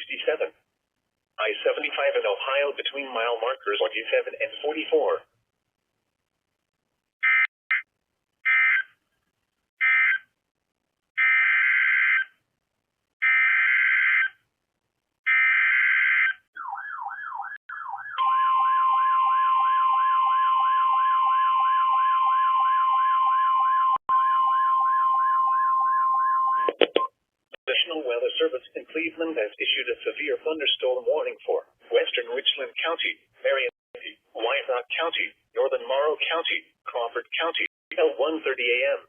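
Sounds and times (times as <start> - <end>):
siren-like warble: 16.6 - 26.7
steady warning tone: 18.2 - 26.7.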